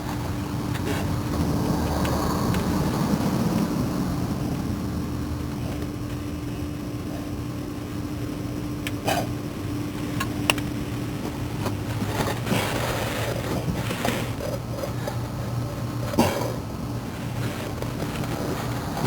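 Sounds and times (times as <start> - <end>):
steady mechanical hum: 0.0 - 19.0
rough scraping and handling: 11.1 - 19.0.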